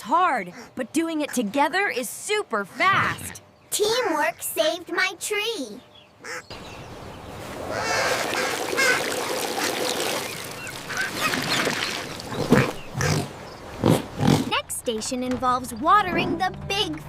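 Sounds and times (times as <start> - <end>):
ducks quacking: 6.2 - 6.5, 7.6 - 14.4.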